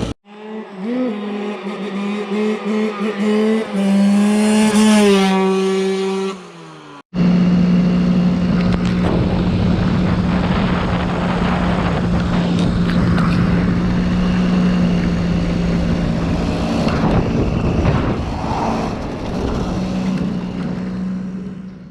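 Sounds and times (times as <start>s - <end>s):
dirt bike engine high revving: 0.0s - 21.5s.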